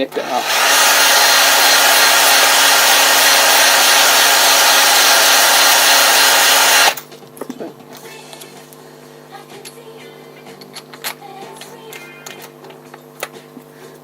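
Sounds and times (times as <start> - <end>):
electric drill whirring: 0.0 - 7.0.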